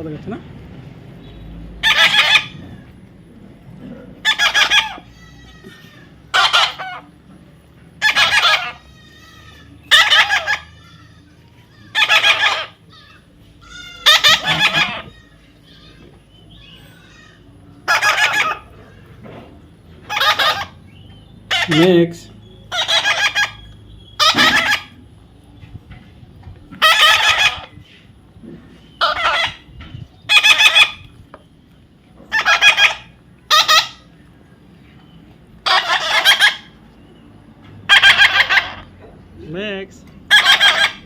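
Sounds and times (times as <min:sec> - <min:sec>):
parrot squawking: 0:01.8 - 0:02.8, 0:04.2 - 0:07.1, 0:08.0 - 0:18.8, 0:20.0 - 0:25.0, 0:26.8 - 0:27.8, 0:29.0 - 0:29.7, 0:30.3 - 0:31.1, 0:32.3 - 0:34.2, 0:35.6 - 0:36.8, 0:37.8 - 0:39.0, 0:40.3 - 0:41.0.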